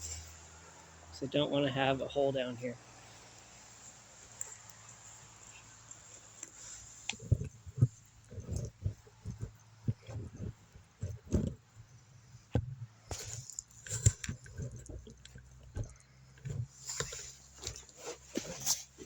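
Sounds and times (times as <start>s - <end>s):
footsteps and thumps: 7.1s - 19.0s
branches dragged through brush: 16.6s - 19.0s.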